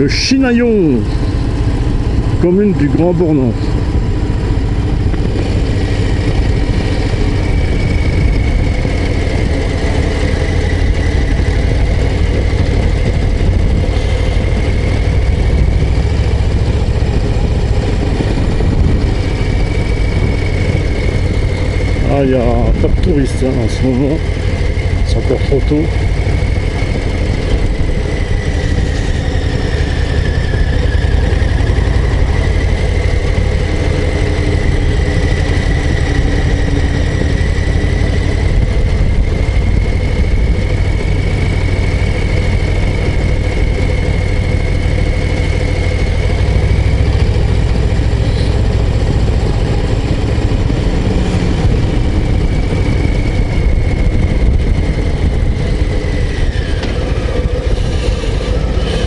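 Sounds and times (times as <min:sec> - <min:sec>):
high whine: 0:00.0 - 0:59.0
motorcycle engine running: 0:00.0 - 0:59.0.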